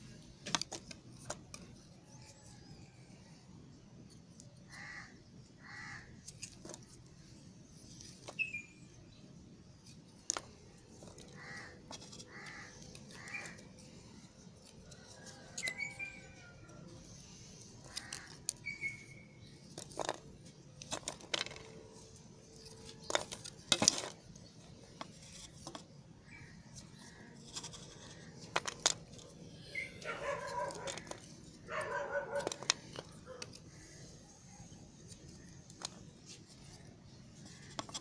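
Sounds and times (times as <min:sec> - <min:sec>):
birds chirping: 0:08.3 - 0:09.3, 0:10.3 - 0:14.2, 0:15.4 - 0:21.0, 0:21.9 - 0:36.0.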